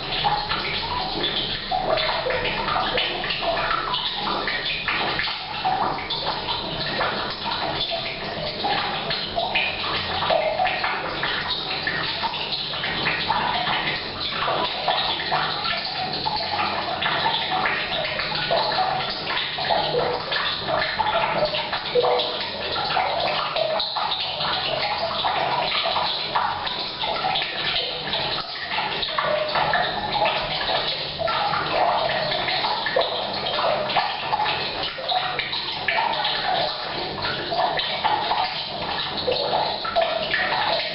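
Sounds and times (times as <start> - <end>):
rain pattering on roof: 0.0 - 40.9
water pouring into tank: 0.0 - 40.9
water splashes: 0.0 - 40.9.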